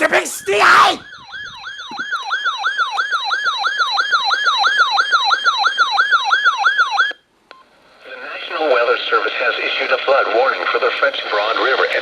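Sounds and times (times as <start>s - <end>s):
police siren yelp: 0.2s - 7.2s.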